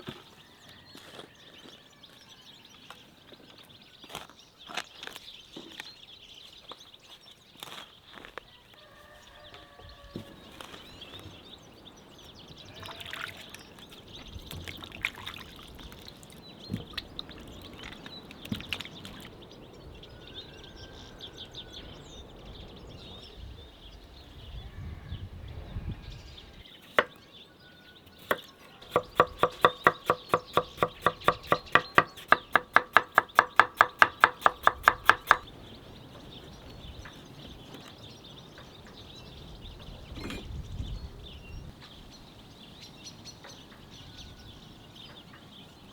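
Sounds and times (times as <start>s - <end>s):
knife chopping on cutting board: 28.2s - 35.5s.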